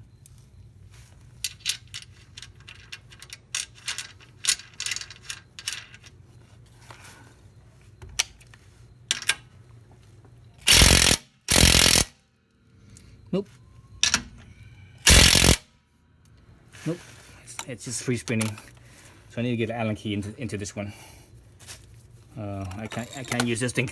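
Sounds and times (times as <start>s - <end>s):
cordless impact wrench bursts: 10.6s - 12.1s, 15.0s - 15.6s
metallic clicks of tools: 22.6s - 23.7s.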